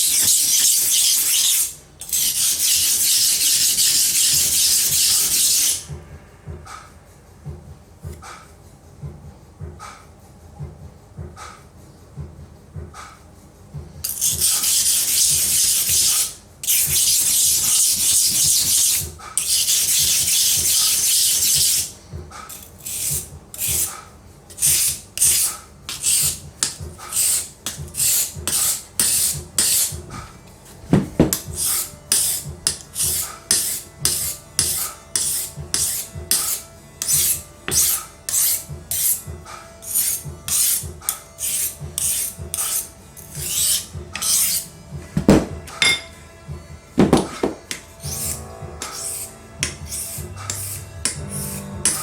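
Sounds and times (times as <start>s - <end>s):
knife sharpening strokes: 0.0s - 5.9s, 14.1s - 21.9s, 22.5s - 23.9s, 24.5s - 30.0s, 31.2s - 39.2s, 39.8s - 46.1s, 47.1s - 52.0s
sharp knock: 45.2s - 45.8s, 47.0s - 47.7s.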